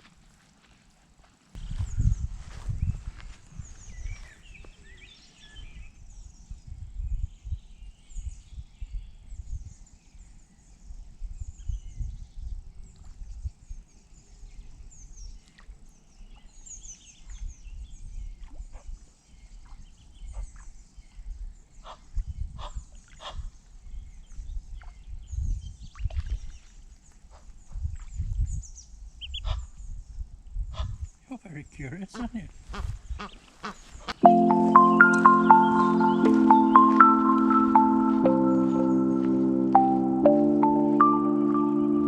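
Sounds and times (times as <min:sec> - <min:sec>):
birds chirping and singing: 0:01.6 - 0:09.0, 0:32.1 - 0:42.0
wind rumble on microphone: 0:01.6 - 0:31.2, 0:32.5 - 0:34.2.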